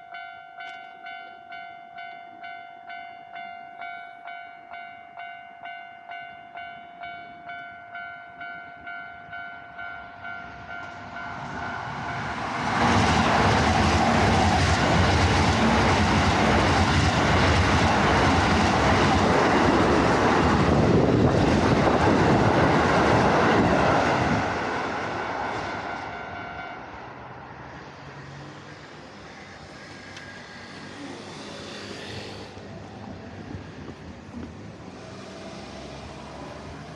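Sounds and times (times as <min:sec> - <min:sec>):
electric train passing: 0:00.0 - 0:36.9.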